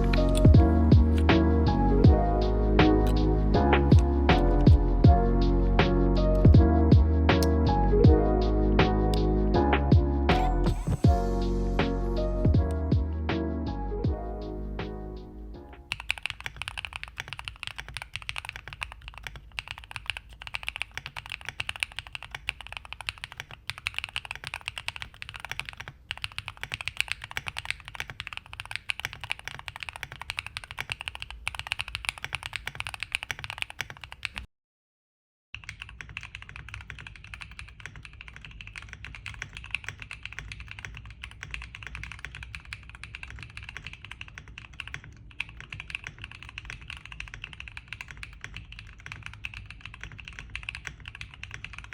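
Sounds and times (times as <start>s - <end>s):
fast typing on keyboard: 0.0s - 2.2s, 15.9s - 34.5s, 35.6s - 51.9s.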